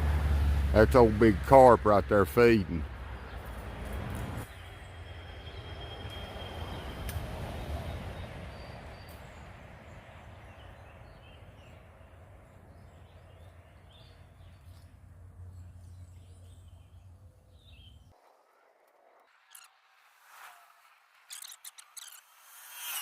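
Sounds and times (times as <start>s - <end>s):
bird chirps: 10.2s - 18.1s, 21.3s - 23.0s.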